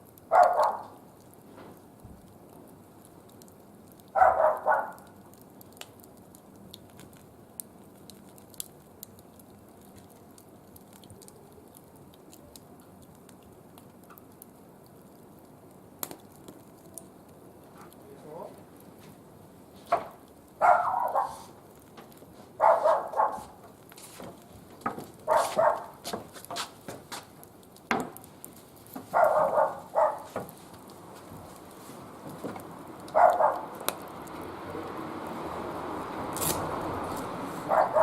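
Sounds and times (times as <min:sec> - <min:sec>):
dog barking: 0:00.3 - 0:01.0, 0:04.2 - 0:05.1, 0:20.6 - 0:21.5, 0:22.6 - 0:23.6, 0:25.3 - 0:26.0, 0:29.1 - 0:30.4, 0:33.1 - 0:33.8, 0:37.7 - 0:38.0.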